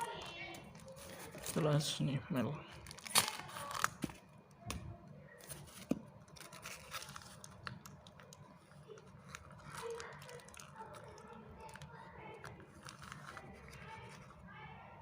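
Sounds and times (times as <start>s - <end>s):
hands handling plastic bags: 2.7s - 4.2s, 5.4s - 14.4s.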